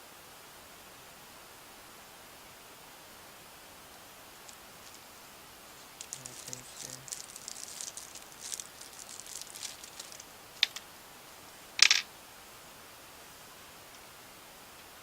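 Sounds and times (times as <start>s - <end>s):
plastic parts crackling and rustling: 4.5s - 5.1s, 5.8s - 10.8s, 11.8s - 12.0s
parts rattling: 6.0s - 10.8s, 11.8s - 12.1s.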